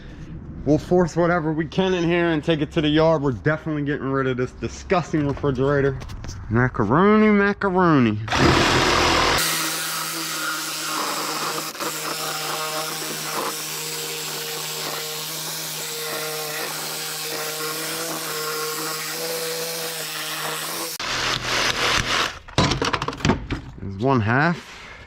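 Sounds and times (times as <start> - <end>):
power tool motor hum: 8.3 - 22.4.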